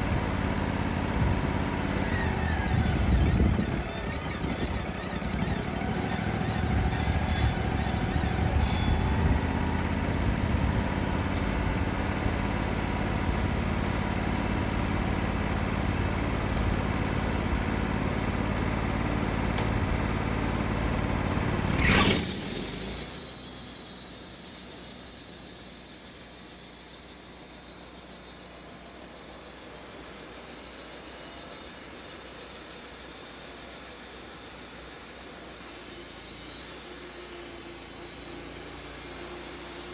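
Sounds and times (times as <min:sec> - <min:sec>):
sawmill engine running: 0:00.0 - 0:39.9
steady high hiss: 0:22.9 - 0:39.9.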